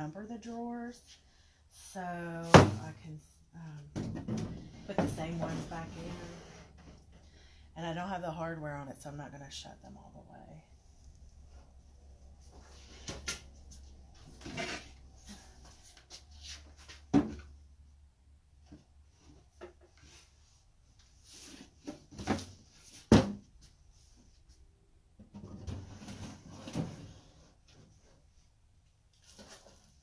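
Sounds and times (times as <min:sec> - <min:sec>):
wooden drawers scraping: 0:14.3 - 0:15.1.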